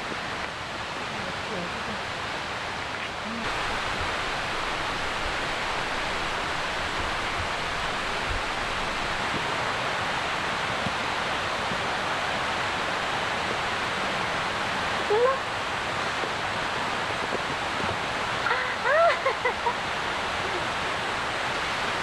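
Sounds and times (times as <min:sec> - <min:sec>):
water rushing: 0:00.0 - 0:22.0.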